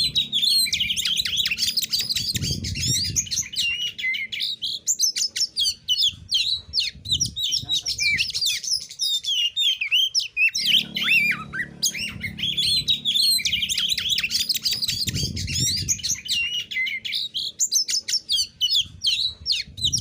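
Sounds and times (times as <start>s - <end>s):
low steady hum: 0.0s - 4.0s, 10.6s - 17.3s
bird singing varied whistles: 0.0s - 20.0s.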